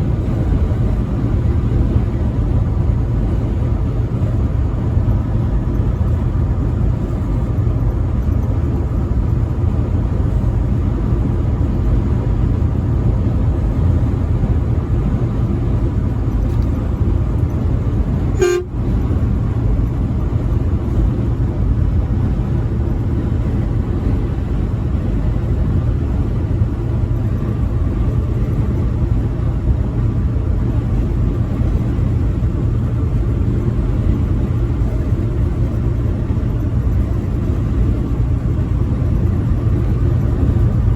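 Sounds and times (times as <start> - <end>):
truck engine and road noise: 0.0 - 40.9.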